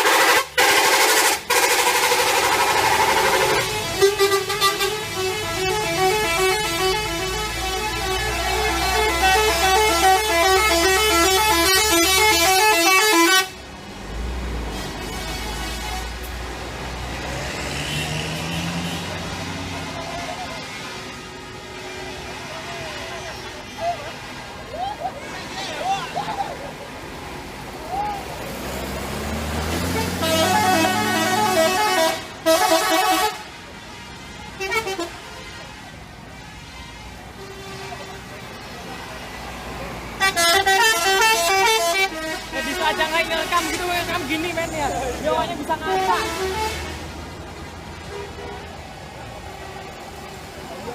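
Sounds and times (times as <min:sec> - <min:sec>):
bus musical horn playing tune: 0:00.0 - 0:13.7, 0:14.7 - 0:16.4, 0:29.6 - 0:35.9, 0:40.1 - 0:44.6, 0:45.4 - 0:47.2.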